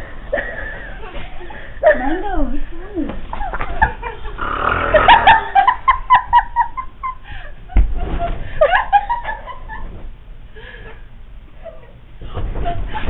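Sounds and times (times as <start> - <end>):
person giggling: 3.8 - 7.2.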